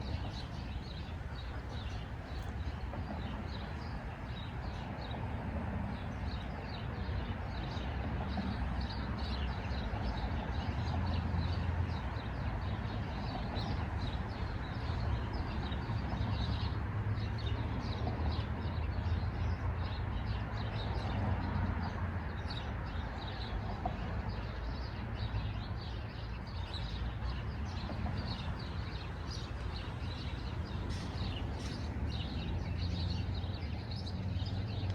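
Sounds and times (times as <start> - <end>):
birds chirping: 26.5 - 34.9.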